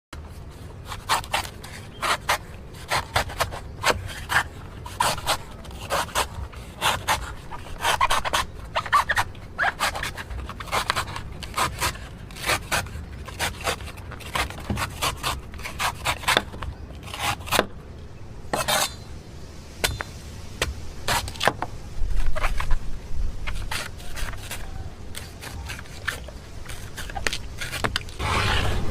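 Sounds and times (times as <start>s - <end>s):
blade scraping cuts into coconut: 0.8s - 17.7s, 18.5s - 19.0s, 23.4s - 28.9s.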